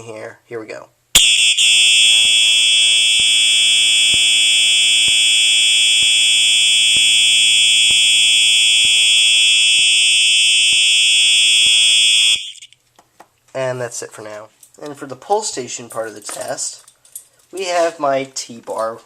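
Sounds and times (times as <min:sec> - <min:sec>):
fire alarm horn tone: 0:01.2 - 0:12.7.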